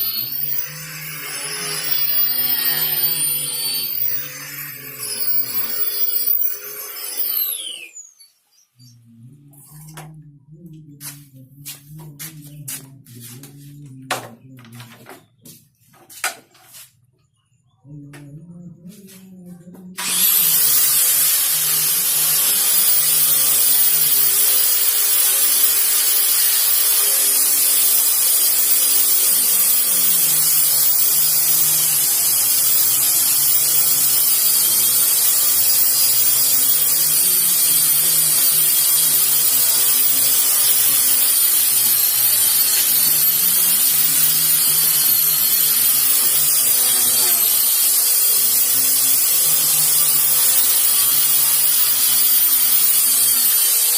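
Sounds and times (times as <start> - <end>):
electric sander motor whining: 0.0 - 8.1, 20.0 - 53.9
sandpaper hissing against wood: 11.0 - 13.8, 16.1 - 17.0.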